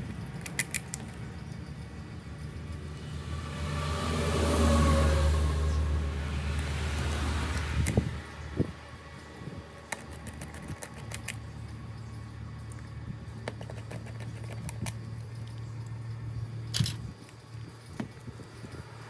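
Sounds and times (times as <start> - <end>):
tools clicking and tapping: 0.0 - 3.1, 9.9 - 11.8, 12.6 - 16.0
steady low hum: 0.0 - 19.0.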